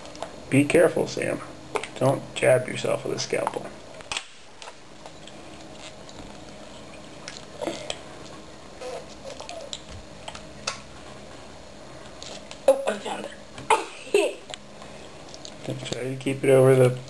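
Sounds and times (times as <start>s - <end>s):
goo blob squishing: 4.1s - 11.0s.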